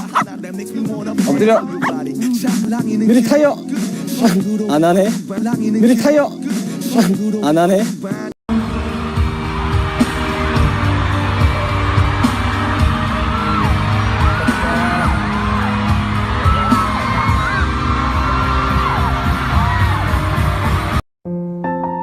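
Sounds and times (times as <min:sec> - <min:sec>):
crowd screaming and cheering: 0:09.0 - 0:20.6.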